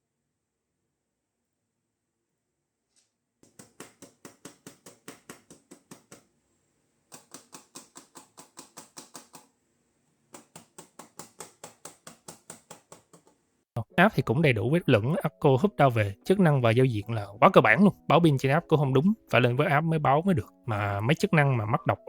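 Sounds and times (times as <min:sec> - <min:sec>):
mouse button clicking rapidly: 0:07.1 - 0:09.5, 0:10.4 - 0:13.3.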